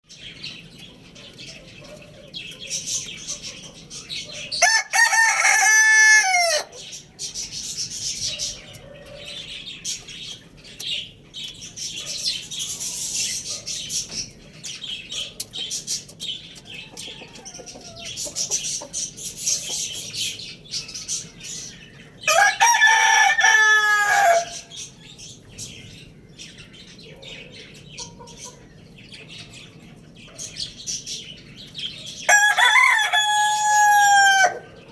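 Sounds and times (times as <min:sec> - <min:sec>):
hen clucking: 0:00.7 - 0:21.7, 0:27.9 - 0:28.8
rooster crowing: 0:04.5 - 0:06.8, 0:22.3 - 0:24.7, 0:32.3 - 0:34.8
high chirping: 0:06.7 - 0:22.0.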